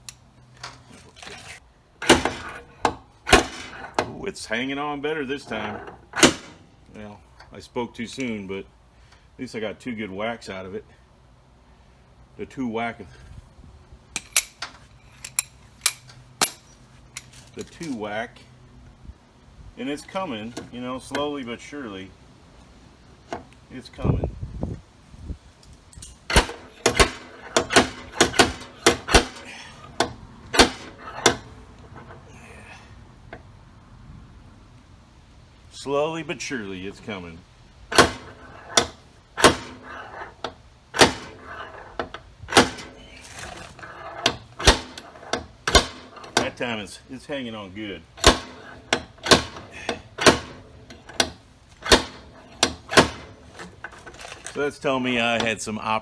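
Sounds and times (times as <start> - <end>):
slide hammer metal clanks: 2.0 - 4.2, 14.2 - 18.0, 26.0 - 32.2, 37.9 - 40.4, 41.0 - 41.9, 42.5 - 46.6, 48.2 - 54.6.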